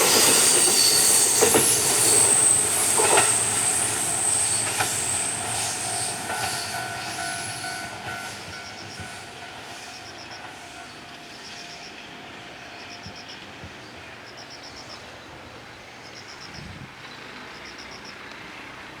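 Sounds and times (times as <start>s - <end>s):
train rumbling past: 0.0s - 19.0s
insect chirping in trills: 0.1s - 10.7s.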